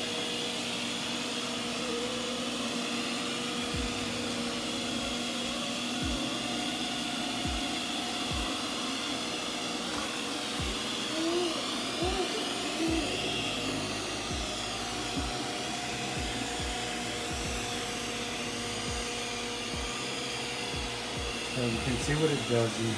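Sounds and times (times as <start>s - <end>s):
robot vacuum whirring: 0.0s - 22.9s
soft low thumps: 15.2s - 15.4s, 16.2s - 17.8s, 20.8s - 22.2s.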